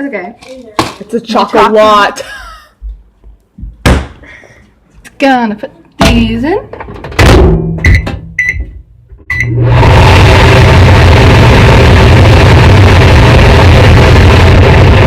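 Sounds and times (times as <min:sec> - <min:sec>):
microwave keypad beeping: 0:07.8 - 0:09.6
microwave oven humming: 0:07.9 - 0:15.0.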